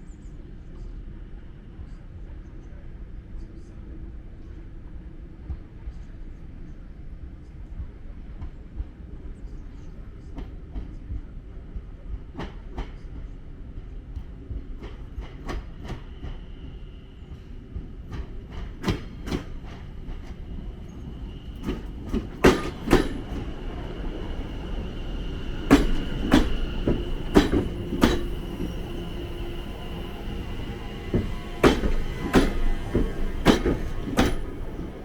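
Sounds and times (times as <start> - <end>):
train wheels clacking over rail joints: 18.0 - 35.0.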